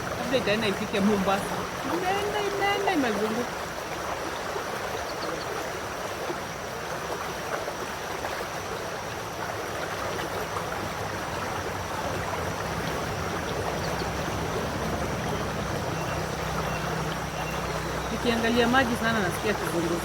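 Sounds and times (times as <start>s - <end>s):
river water rushing: 0.0s - 20.0s.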